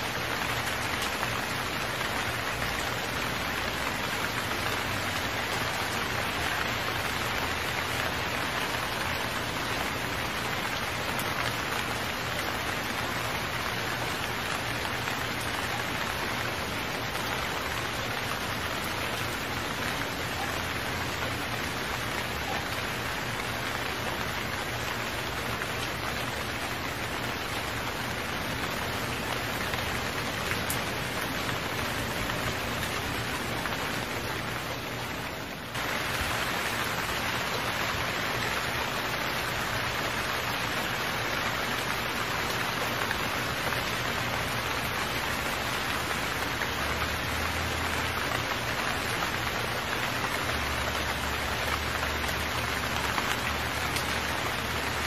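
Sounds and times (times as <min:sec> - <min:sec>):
heavy rain falling: 0:00.0 - 0:55.0.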